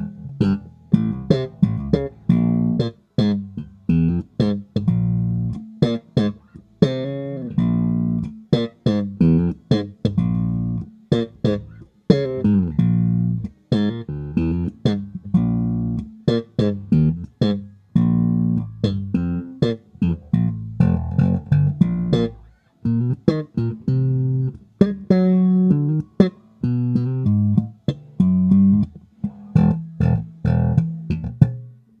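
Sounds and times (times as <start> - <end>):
solo electric bass playing: 0.0 - 32.0.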